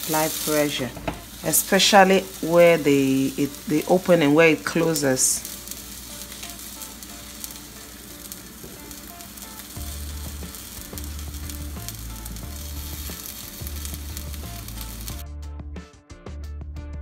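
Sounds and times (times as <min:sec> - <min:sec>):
food sizzling on a grill: 0:00.0 - 0:15.2
background music bass line: 0:06.2 - 0:17.0.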